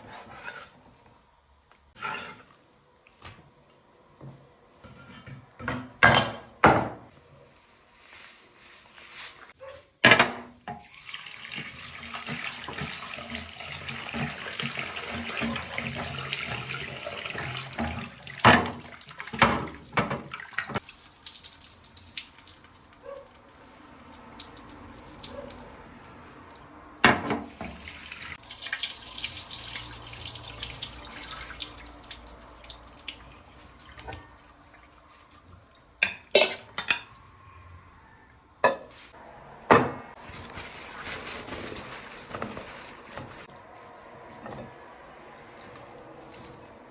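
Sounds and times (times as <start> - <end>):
tap water running into sink: 10.8 - 22.9, 27.4 - 33.3.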